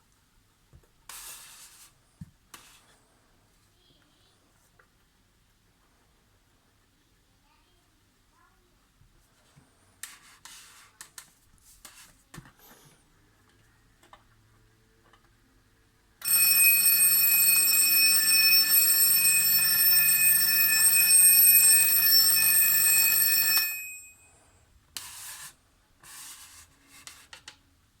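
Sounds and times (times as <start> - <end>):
alarm clock ringing: 16.2 - 24.2.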